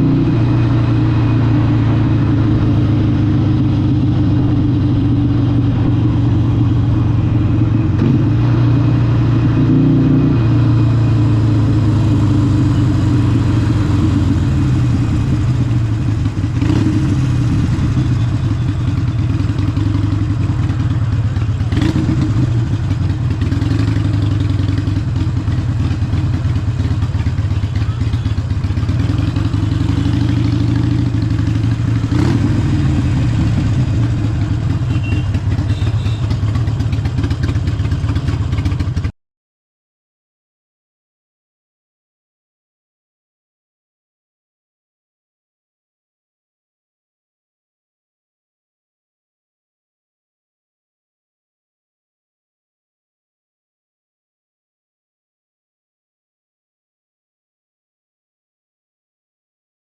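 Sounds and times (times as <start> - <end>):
motorcycle engine revving: 0.0 - 39.1.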